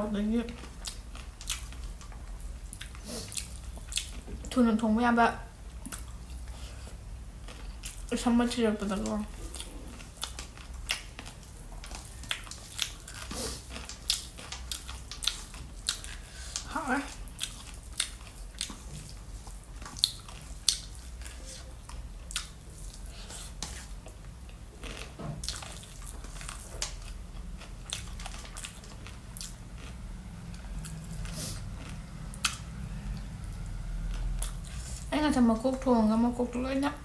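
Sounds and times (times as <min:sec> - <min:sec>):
steady low hum: 0:00.0 - 0:37.0
chewing smacks and crunches: 0:00.6 - 0:04.3, 0:09.3 - 0:30.0.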